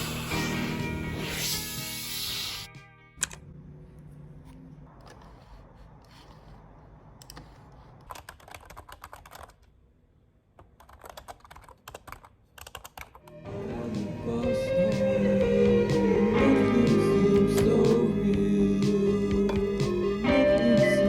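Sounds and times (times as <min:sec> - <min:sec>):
music: 0:00.0 - 0:03.4, 0:13.2 - 0:21.0
keyboard typing: 0:07.2 - 0:09.7, 0:10.6 - 0:13.4.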